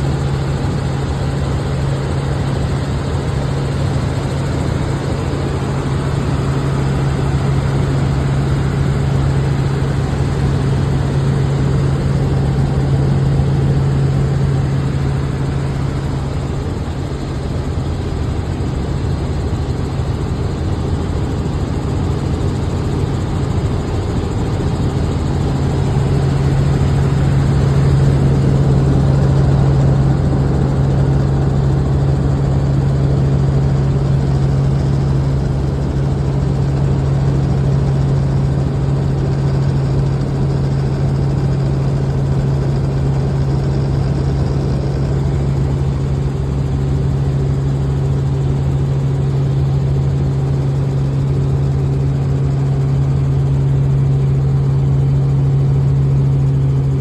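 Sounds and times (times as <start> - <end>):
helicopter engine and rotors droning: 0.0 - 57.0.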